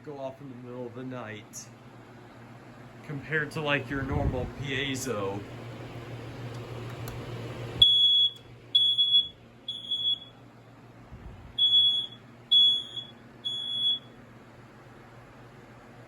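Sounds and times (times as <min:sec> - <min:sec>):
smoke alarm beeping: 0:07.8 - 0:10.4, 0:11.6 - 0:14.2.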